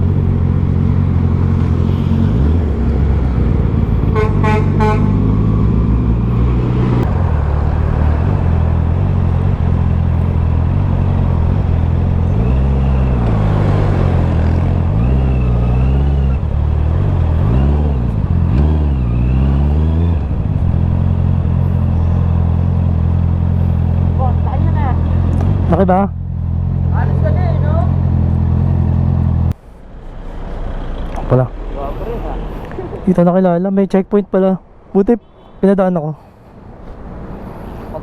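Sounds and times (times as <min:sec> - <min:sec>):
vehicle horn beeps: 0:04.1 - 0:05.2, 0:35.2 - 0:35.6
motorcycle engine running: 0:07.1 - 0:29.5.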